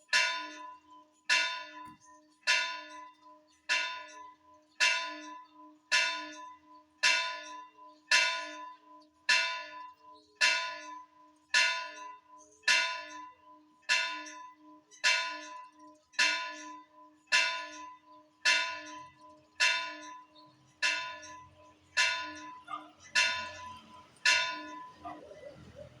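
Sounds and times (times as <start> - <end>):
church bell tolling: 16.2 - 21.4, 22.0 - 26.0.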